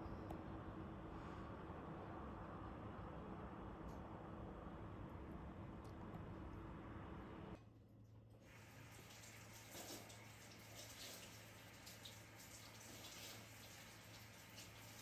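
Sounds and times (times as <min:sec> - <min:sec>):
tap water running into sink: 0:08.5 - 0:15.0.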